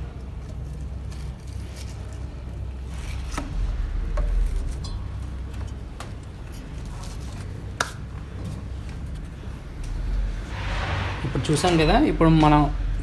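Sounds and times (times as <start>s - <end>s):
low steady hum: 0.0s - 13.0s.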